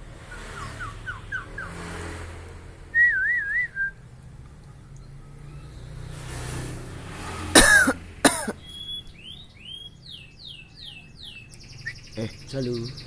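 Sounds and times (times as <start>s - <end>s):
bird imitating a cough: 7.6s - 8.6s.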